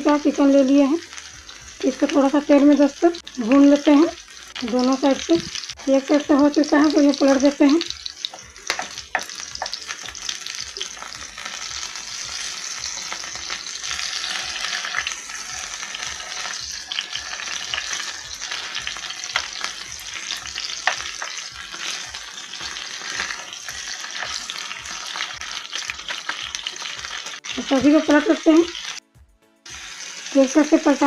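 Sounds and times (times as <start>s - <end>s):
chicken sizzling in oil: 0.0s - 29.0s, 29.6s - 31.0s
sharp taps in pan: 8.3s - 9.8s.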